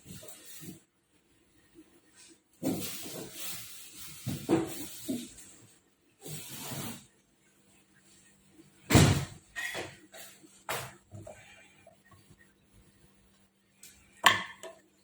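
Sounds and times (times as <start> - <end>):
kitchen scrapes and rustles: 2.2 - 7.1.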